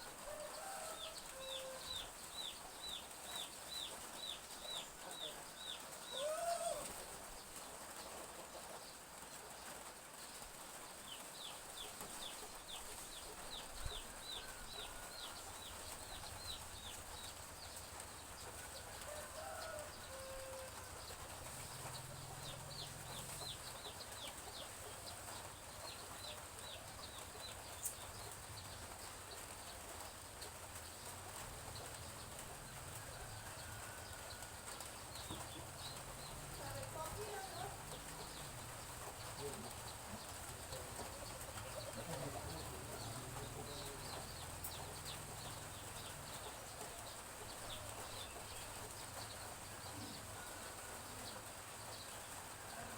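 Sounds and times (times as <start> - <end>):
light drizzle hiss: 0.0 - 52.9
chicks peeping: 10.7 - 52.5
hen clucking: 34.8 - 47.0.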